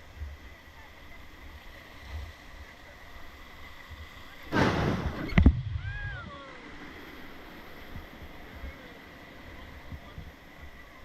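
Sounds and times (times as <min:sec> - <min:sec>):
loud splash: 0:04.5 - 0:05.4
heavy thump: 0:04.5 - 0:05.6
wind on microphone: 0:04.9 - 0:06.4.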